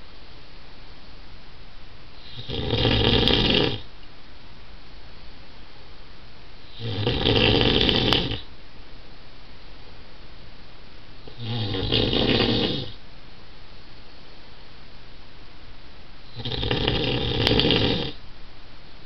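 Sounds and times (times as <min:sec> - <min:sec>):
man snoring loudly: 0:02.3 - 0:03.8, 0:06.7 - 0:08.4, 0:11.3 - 0:13.0, 0:16.3 - 0:18.2.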